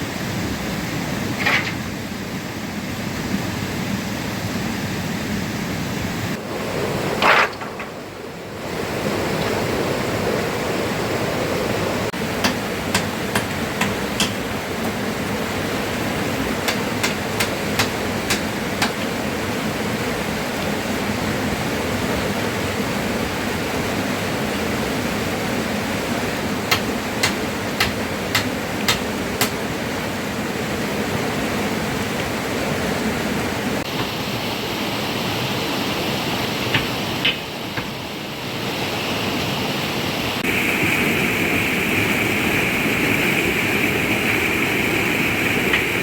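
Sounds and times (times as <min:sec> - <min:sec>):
river water rushing: 0:00.0 - 0:46.0
heavy rain: 0:06.0 - 0:46.0
tool striking wood: 0:12.4 - 0:15.1, 0:16.6 - 0:19.1, 0:26.7 - 0:29.6, 0:36.7 - 0:38.0.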